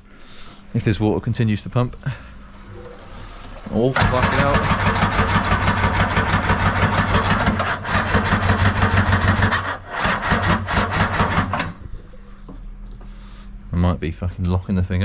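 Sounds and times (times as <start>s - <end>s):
jet boat engine running: 2.4s - 11.8s.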